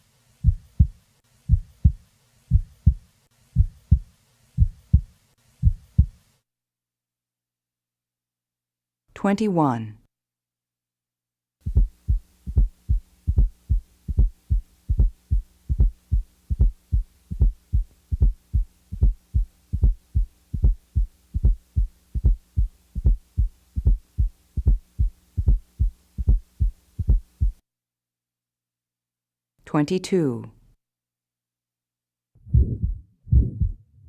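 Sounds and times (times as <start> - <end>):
faint low hum: 0.0 - 6.4, 11.6 - 27.6, 32.4 - 34.0
heartbeat thumps: 0.4 - 6.2, 11.6 - 27.6, 32.4 - 34.0.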